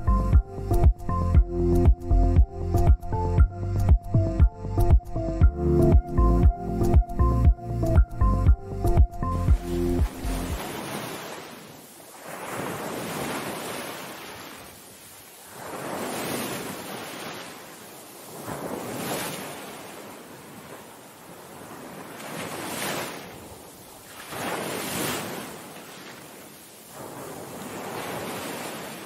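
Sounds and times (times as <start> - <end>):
waves breaking on shore: 9.0 - 29.0.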